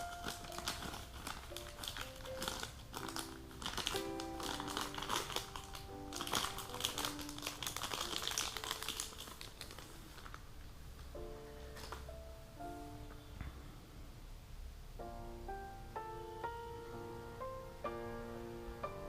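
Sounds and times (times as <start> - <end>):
packaging crinkling: 0.0 - 10.6
piano music: 0.0 - 19.0.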